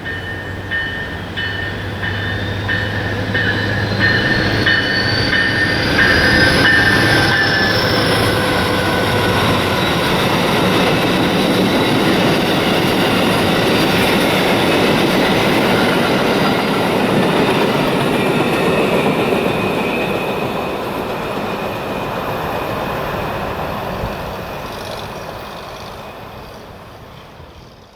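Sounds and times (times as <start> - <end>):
train wheels on rails: 0.0 - 27.9
locomotive turbocharger whistle: 2.2 - 10.3.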